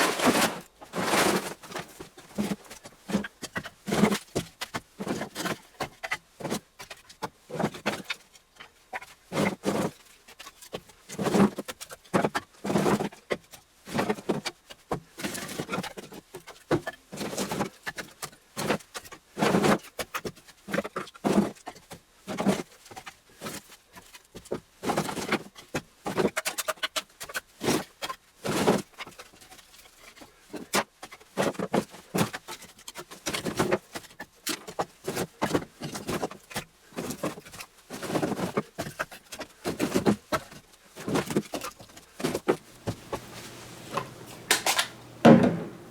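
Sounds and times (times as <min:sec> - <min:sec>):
firewood clunking together: 0:42.8 - 0:45.9.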